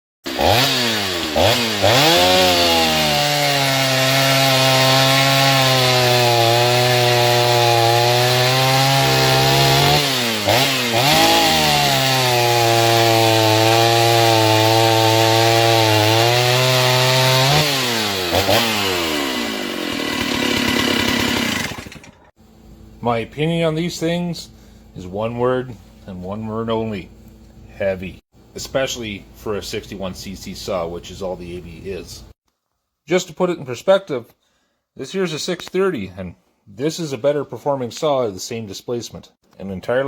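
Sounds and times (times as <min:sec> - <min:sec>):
chainsaw cutting wood: 0:00.3 - 0:22.4.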